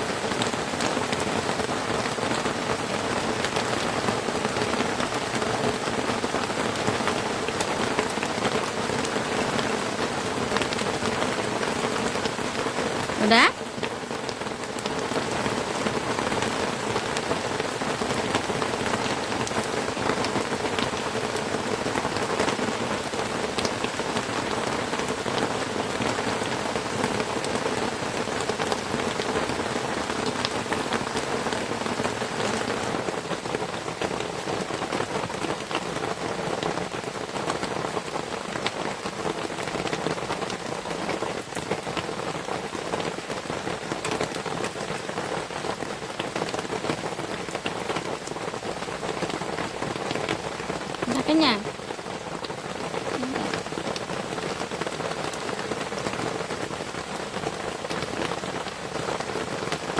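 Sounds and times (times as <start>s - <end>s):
heavy rain on a hut: 0.0s - 59.9s.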